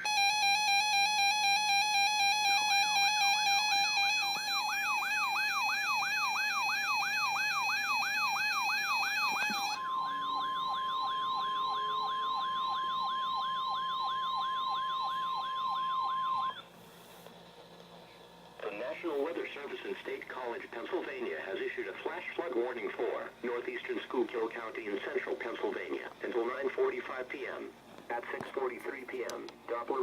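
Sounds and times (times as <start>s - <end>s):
fast warbling siren tone: 0.0s - 16.6s
steady warning tone: 0.0s - 16.7s.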